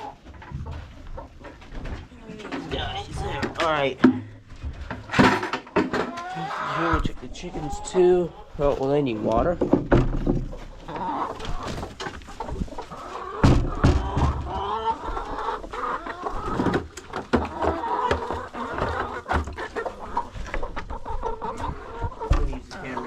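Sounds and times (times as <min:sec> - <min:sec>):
chickens clucking: 0:00.0 - 0:23.0
loud knocks: 0:09.6 - 0:10.5.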